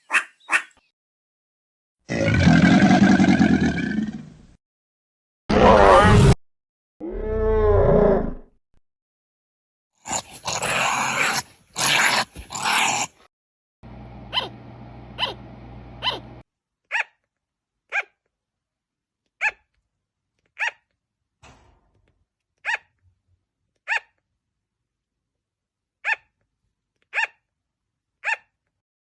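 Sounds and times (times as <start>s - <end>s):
harsh growling roar: 5.5s - 6.4s
short sharp yelping calls: 16.0s - 16.2s, 16.9s - 17.2s, 17.9s - 18.2s, 19.4s - 19.7s, 22.6s - 22.9s, 23.9s - 24.2s, 26.0s - 26.3s, 27.1s - 27.4s, 28.2s - 28.5s.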